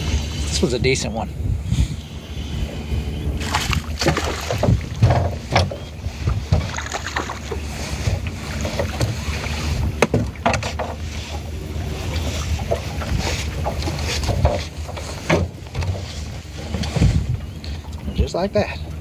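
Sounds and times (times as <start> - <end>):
wind on microphone: 0.0 - 18.4
low boat rumble: 0.0 - 19.0
water splashes: 3.3 - 19.0
sharp knocks: 3.5 - 5.8.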